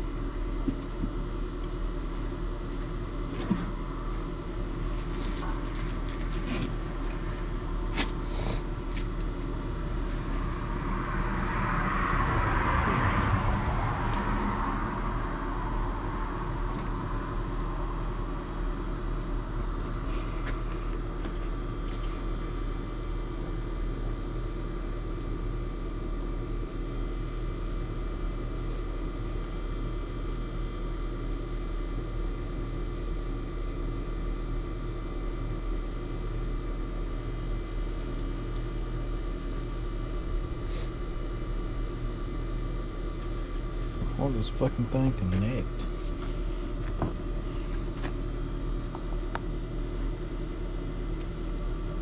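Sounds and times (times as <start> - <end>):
machine drone with whining tones: 0.0 - 52.0
rush of noise: 10.2 - 17.5.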